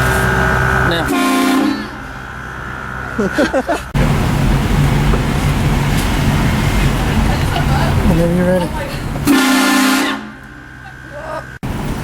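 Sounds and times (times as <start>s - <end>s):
air horn blasting: 0.0s - 2.2s, 9.2s - 10.8s
vehicle engine running: 0.0s - 12.0s.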